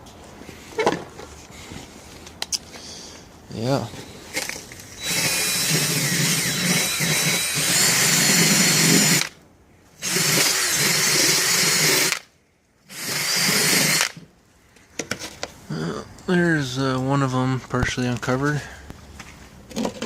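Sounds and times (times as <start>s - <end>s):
handheld power tool running: 4.4s - 9.3s, 10.0s - 12.2s, 12.9s - 14.2s.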